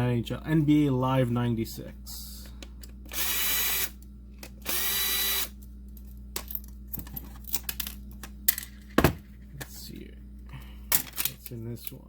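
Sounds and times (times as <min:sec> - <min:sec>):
electric screwdriver whining: 0:03.1 - 0:04.0, 0:04.6 - 0:05.6.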